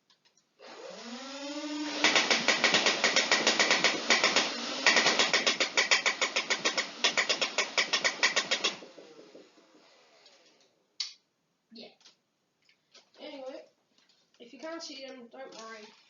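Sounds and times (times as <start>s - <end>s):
foam blaster firing rapidly: 1.8s - 9.4s.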